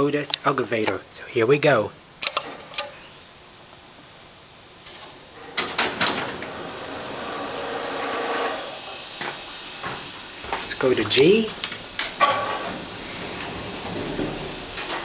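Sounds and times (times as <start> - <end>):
elevator door clunks: 5.3 - 15.0
elevator door click: 5.4 - 8.7, 10.4 - 15.0
mechanical whir: 10.4 - 15.0.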